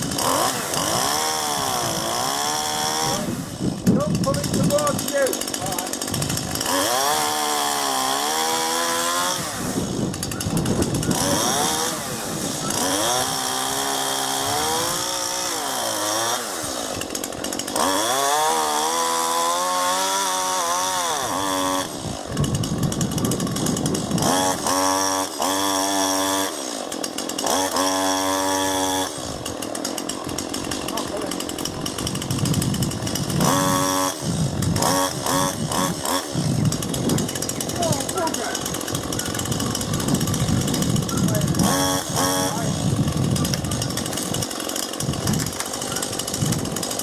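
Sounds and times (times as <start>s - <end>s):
chainsaw cutting wood: 0.0s - 47.0s.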